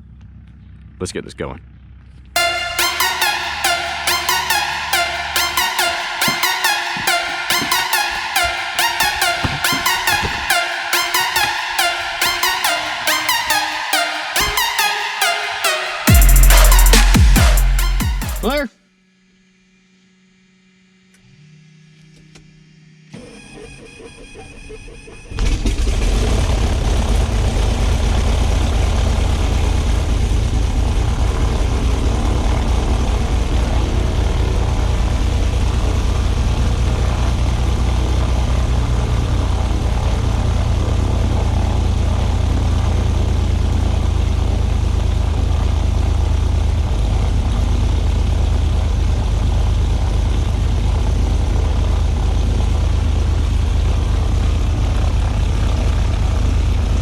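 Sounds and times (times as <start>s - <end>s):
propeller aircraft engine idling: 25.8s - 57.0s.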